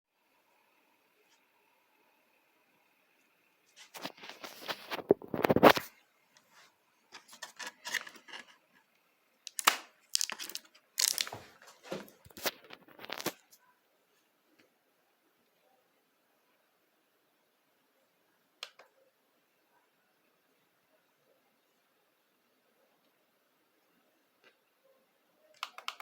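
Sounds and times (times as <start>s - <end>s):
hard plastic clicking and scraping: 7.1s - 8.6s.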